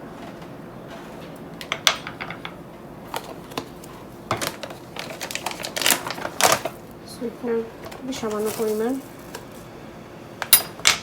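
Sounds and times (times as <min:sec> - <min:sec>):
spoon clinking against bowl: 0:10.6 - 0:10.9.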